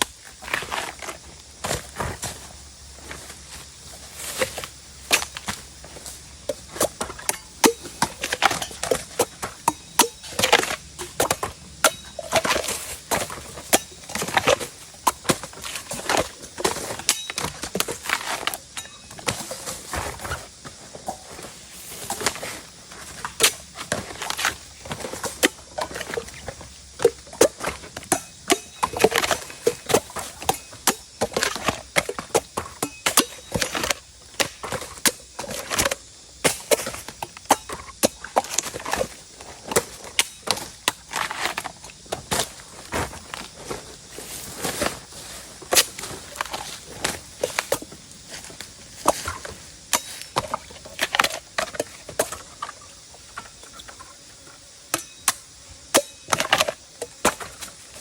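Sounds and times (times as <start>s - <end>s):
blade chopping bamboo: 6.5s - 19.8s, 27.0s - 42.5s, 54.9s - 57.6s.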